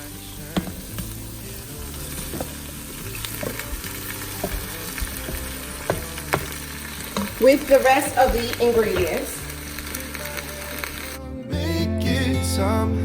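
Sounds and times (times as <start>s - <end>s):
beef sizzling in a pot: 0.0s - 11.1s
utensil knocking against pot: 2.2s - 2.6s, 3.3s - 9.3s.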